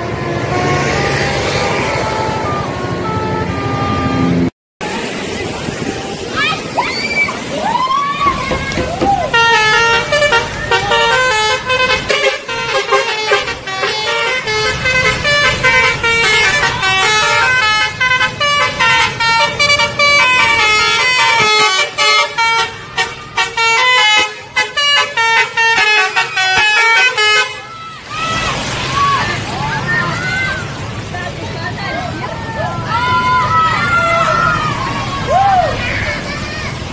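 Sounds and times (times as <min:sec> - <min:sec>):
multi-tone bus horn melody: 0:00.0 - 0:04.5, 0:09.2 - 0:28.0
low rumble of bus: 0:00.0 - 0:36.9.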